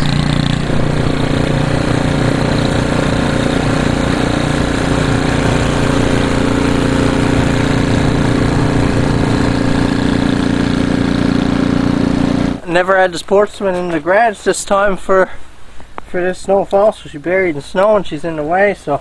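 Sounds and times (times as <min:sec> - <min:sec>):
small engine idling: 0:00.0 - 0:12.6.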